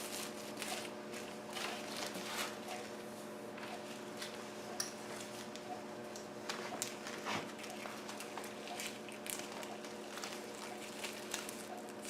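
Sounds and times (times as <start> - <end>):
plastic wrapping crinkling: 0.0 - 2.9, 6.4 - 12.0.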